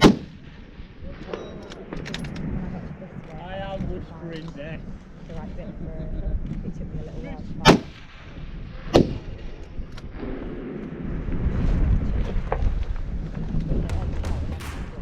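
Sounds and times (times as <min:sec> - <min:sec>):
low rumble: 0:13.8 - 0:15.0
rifle shots: 0:13.9 - 0:15.0.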